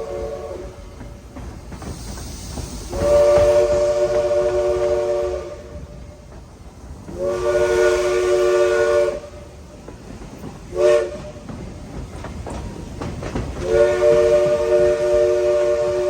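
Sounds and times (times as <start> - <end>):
three-chime steam whistle blasts: 2.7 - 5.9, 7.2 - 9.4, 13.6 - 16.0.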